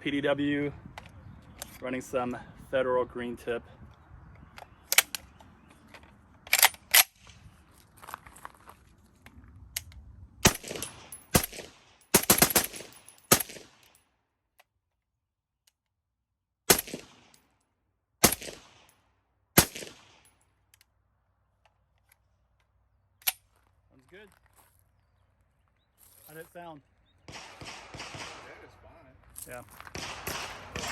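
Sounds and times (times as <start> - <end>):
suppressed rifle shots: 10.4 - 13.9, 16.7 - 17.4, 18.2 - 18.9, 19.6 - 20.3, 27.3 - 28.6, 29.9 - 30.9.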